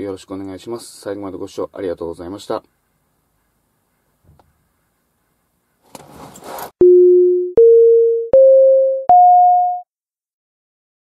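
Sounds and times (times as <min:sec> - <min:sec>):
rustling: 0:04.1 - 0:06.8
electronic jingle beeps: 0:06.8 - 0:09.8.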